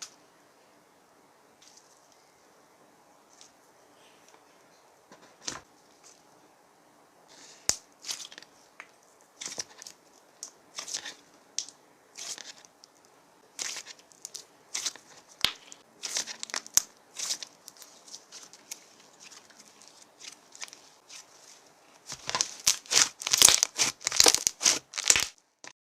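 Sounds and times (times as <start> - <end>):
slime squished by hand: 13.6 - 25.4.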